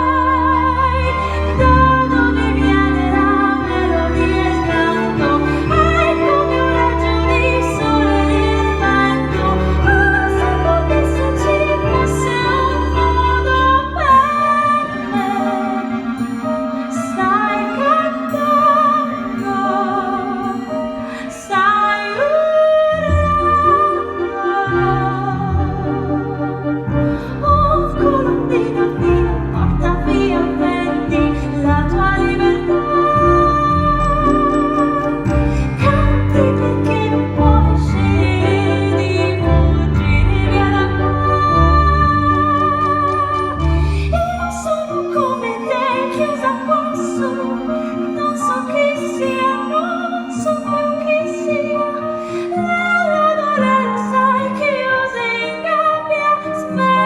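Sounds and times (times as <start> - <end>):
orchestra playing held chords: 0.0 - 21.3
orchestra playing: 0.0 - 55.4
soprano singing with vibrato: 0.0 - 57.0.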